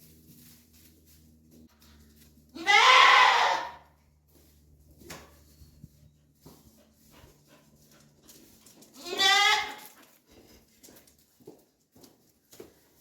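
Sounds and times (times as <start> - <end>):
faint knocks and shuffling: 0.0 - 2.6, 3.9 - 13.0
goat bleating: 2.5 - 3.8, 9.0 - 10.0.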